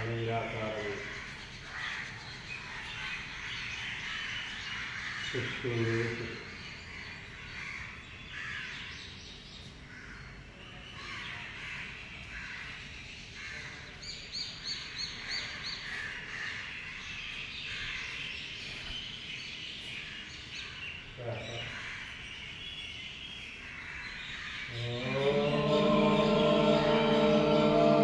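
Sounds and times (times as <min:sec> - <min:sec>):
birds chirping and calling: 0:00.0 - 0:08.9.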